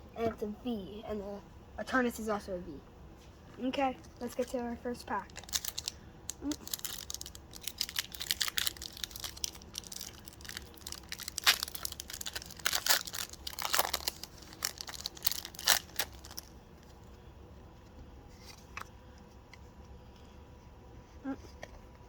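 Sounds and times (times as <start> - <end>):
foil wrapper crinkling and tearing: 4.0 - 17.0.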